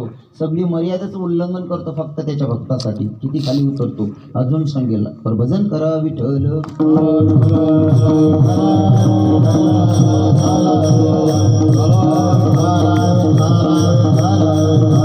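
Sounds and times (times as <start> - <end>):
group chanting devotional song: 6.6 - 15.0
sharp rhythmic strikes: 6.7 - 15.0
sustained instrumental tones: 7.0 - 15.0.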